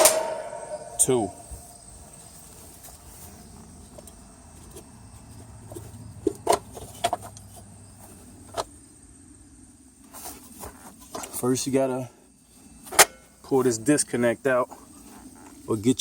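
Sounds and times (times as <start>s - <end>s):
low steady hum: 0.0s - 11.2s
handling clicks and knocks: 3.9s - 7.7s.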